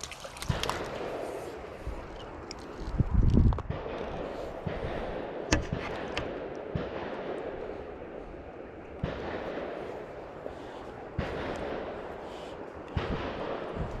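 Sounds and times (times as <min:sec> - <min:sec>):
sharp knocks and clicks: 0:05.5 - 0:06.4.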